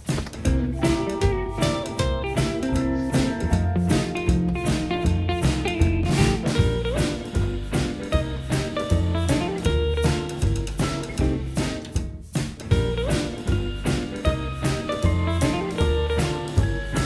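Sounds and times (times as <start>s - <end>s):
bluesy guitar band music: 0.0s - 17.0s.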